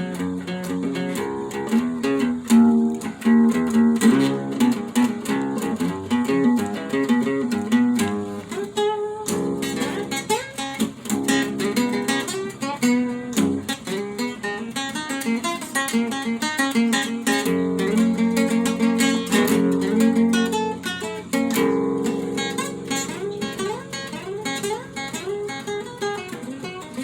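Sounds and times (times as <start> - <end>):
acoustic guitar playing: 0.0 - 27.0.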